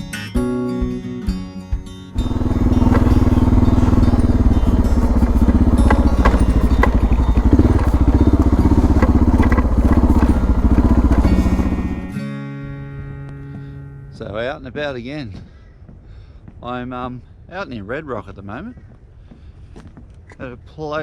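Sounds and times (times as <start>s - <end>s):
motorcycle engine running: 2.2s - 12.2s.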